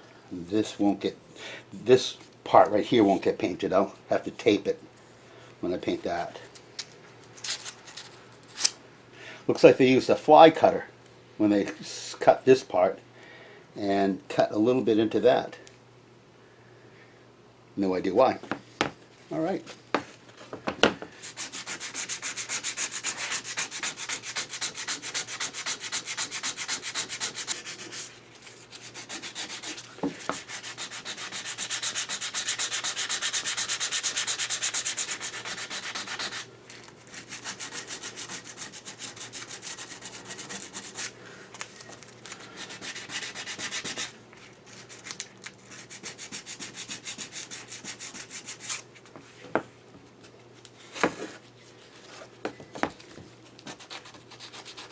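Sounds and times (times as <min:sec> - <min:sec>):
hand sanding metal: 0:21.2 - 0:28.1, 0:28.7 - 0:36.5, 0:37.1 - 0:41.1, 0:42.6 - 0:44.1, 0:45.8 - 0:48.8, 0:53.7 - 0:54.9.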